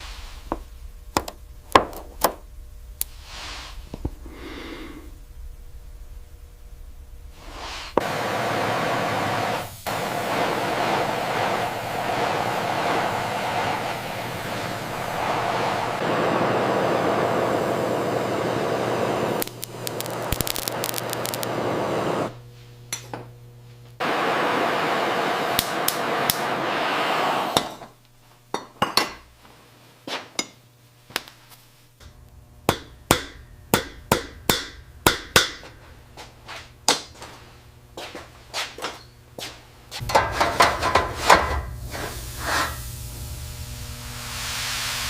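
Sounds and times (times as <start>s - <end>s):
steady rushing noise: 5.0s - 22.4s
sharp metallic taps: 32.7s - 35.7s.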